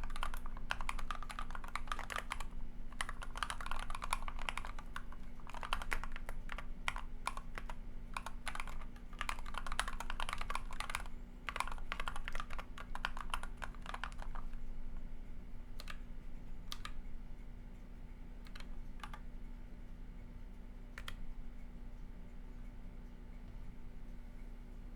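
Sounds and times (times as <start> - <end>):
mechanical keyboard typing: 0.0 - 14.6, 15.8 - 16.0, 16.7 - 17.0, 18.4 - 19.2, 21.0 - 21.2
faint steady hum: 0.0 - 24.9.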